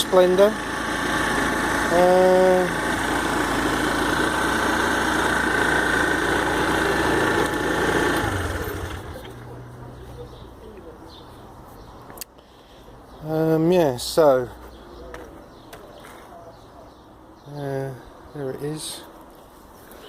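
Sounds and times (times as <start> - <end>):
scooter engine running: 0.0 - 10.3.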